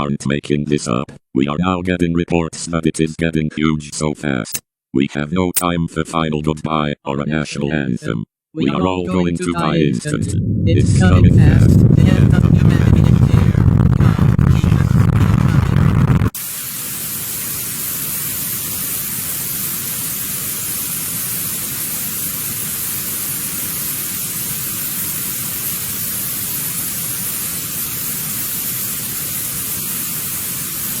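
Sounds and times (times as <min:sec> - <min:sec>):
television static hiss: 0:11.0 - 0:31.0.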